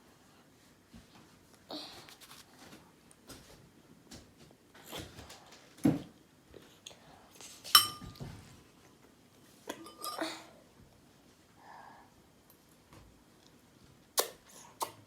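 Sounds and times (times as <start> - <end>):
utensils clinking against dish: 7.7 - 8.3, 9.7 - 10.4.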